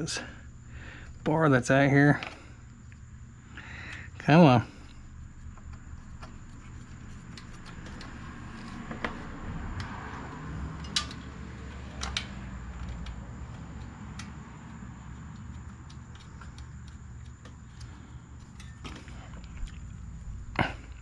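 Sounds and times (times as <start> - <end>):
steady low hum: 0.0 - 21.0
metal tools clicking: 9.8 - 18.9.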